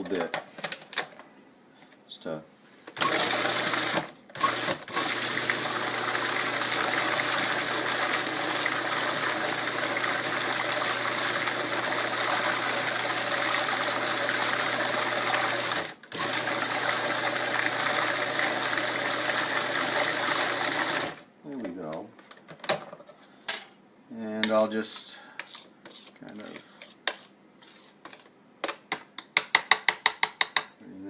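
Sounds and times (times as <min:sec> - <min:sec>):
electric blender running: 0:03.0 - 0:21.2.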